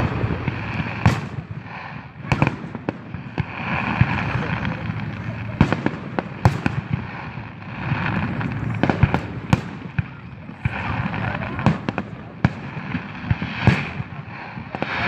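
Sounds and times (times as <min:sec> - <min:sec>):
fireworks and firecrackers banging: 0:00.0 - 0:15.0
background voices: 0:03.4 - 0:06.4, 0:07.3 - 0:12.4.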